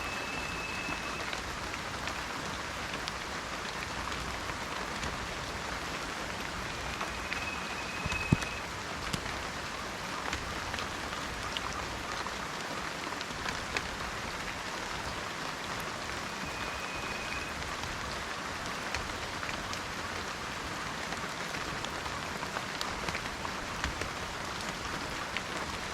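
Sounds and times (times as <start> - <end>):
high level whistle: 0.0 - 1.4, 6.7 - 8.7, 16.2 - 17.6
raindrops ticking: 0.0 - 25.9
steady rain hiss: 0.0 - 25.9.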